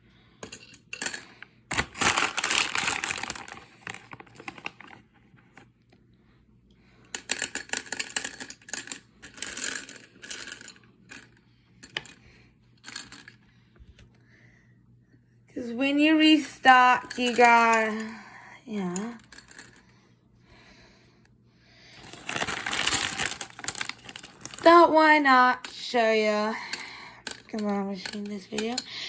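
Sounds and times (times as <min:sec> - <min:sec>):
gumballs clattering: 0:00.5 - 0:04.8, 0:22.0 - 0:25.9, 0:26.7 - 0:29.0.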